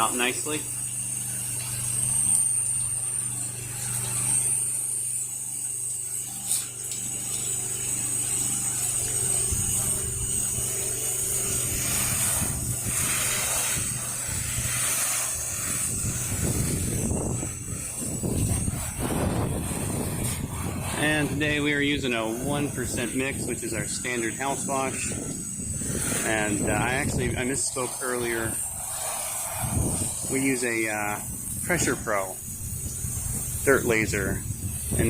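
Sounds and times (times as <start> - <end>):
high whine: 0.0 - 35.0
pressure washer engine running: 0.0 - 35.0
rushing water spray: 8.8 - 35.0.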